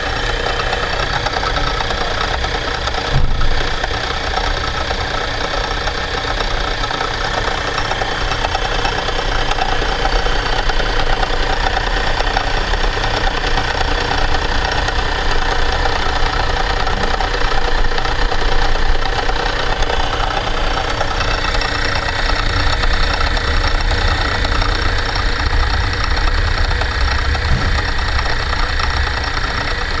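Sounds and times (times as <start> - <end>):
grinding machine running: 0.0 - 30.0
brief knock: 3.1 - 3.5, 27.4 - 28.4.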